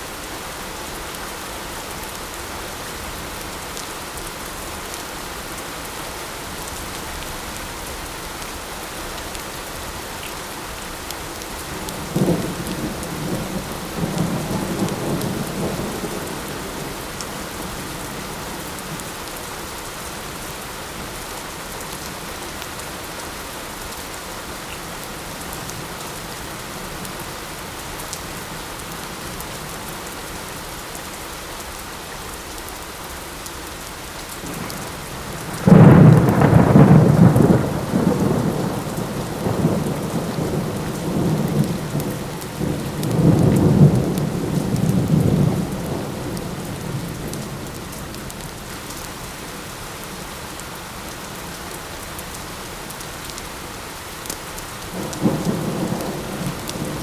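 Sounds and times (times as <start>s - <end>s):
light rain hissing: 34.5s - 51.9s
thunder crack and rumble: 34.6s - 47.8s.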